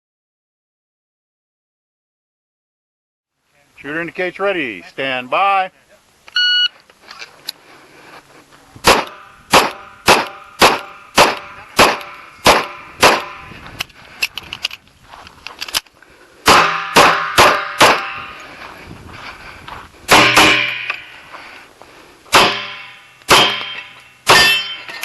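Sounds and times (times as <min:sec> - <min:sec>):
pistol shots: 0:08.8 - 0:13.4, 0:16.5 - 0:18.2, 0:20.1 - 0:21.0, 0:22.3 - 0:24.7.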